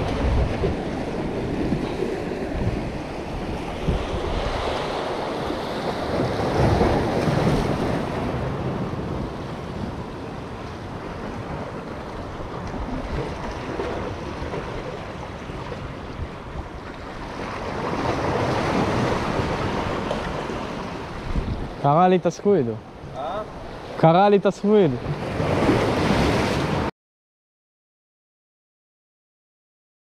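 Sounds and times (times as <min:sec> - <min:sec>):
wind buffeting microphone: 0:00.0 - 0:21.8
sea waves washing: 0:00.0 - 0:26.9.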